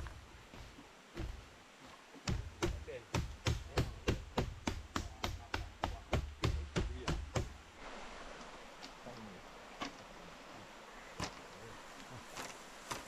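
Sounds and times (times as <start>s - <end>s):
rhythmic chopping strikes: 2.2s - 7.6s.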